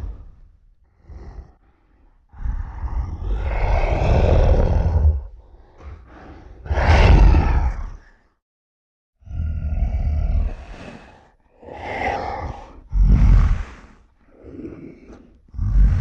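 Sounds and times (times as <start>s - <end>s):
creature roaring: 2.3s - 8.2s, 9.2s - 13.8s, 14.4s - 16.0s.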